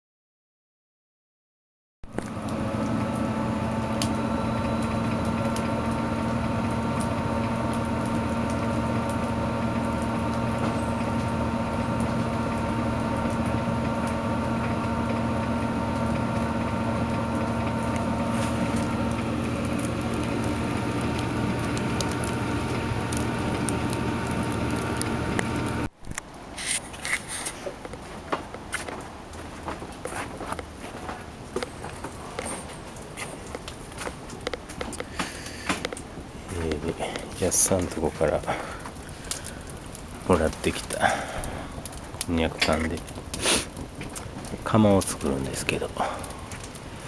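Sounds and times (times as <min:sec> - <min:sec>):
loud mechanical hum: 0:02.1 - 0:47.0
wood fire crackling and popping: 0:02.1 - 0:47.0.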